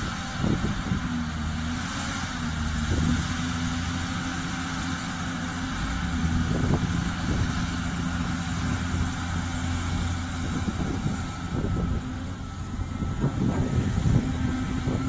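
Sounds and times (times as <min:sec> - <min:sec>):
excavator diesel engine running: 0:00.0 - 0:15.0.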